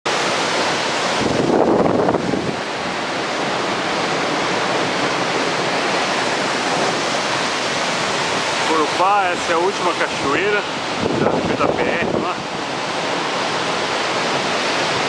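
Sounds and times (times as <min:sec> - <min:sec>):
waterfall rushing: 0:00.1 - 0:15.0
wind buffeting microphone: 0:00.1 - 0:15.0.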